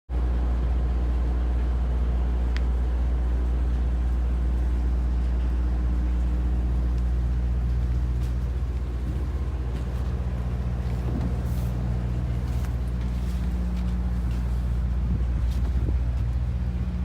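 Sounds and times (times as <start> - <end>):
ship engine droning: 0.1 - 17.0.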